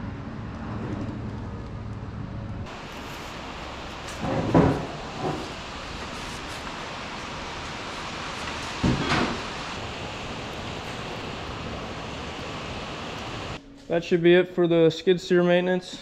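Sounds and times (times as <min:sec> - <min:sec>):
steady hiss: 0:02.7 - 0:14.2.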